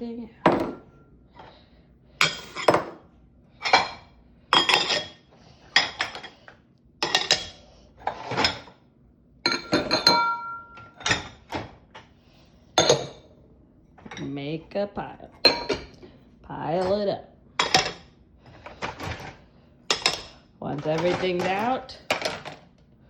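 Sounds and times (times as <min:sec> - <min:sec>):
dishes and glassware clinking: 0:00.4 - 0:01.0, 0:02.2 - 0:03.0, 0:03.6 - 0:05.2, 0:05.8 - 0:06.4, 0:07.0 - 0:08.7, 0:09.5 - 0:11.6, 0:12.8 - 0:13.3, 0:15.4 - 0:16.0, 0:17.6 - 0:18.1, 0:19.9 - 0:22.6
glass ringing tone: 0:09.5 - 0:11.0.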